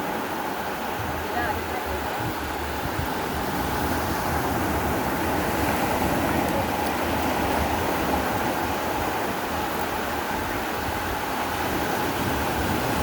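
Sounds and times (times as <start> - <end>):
sea surf rushing: 0.0 - 13.0
wind buffeting microphone: 0.0 - 13.0.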